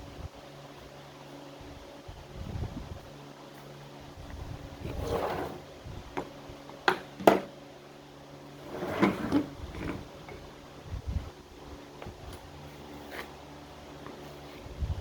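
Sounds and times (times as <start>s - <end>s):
fan humming: 0.0s - 15.0s
rustling and scraping: 4.8s - 5.7s, 8.6s - 10.5s, 12.0s - 13.4s.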